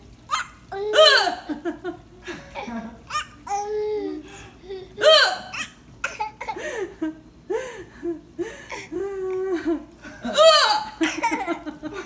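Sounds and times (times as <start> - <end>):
young child laughing: 8.7 - 12.0.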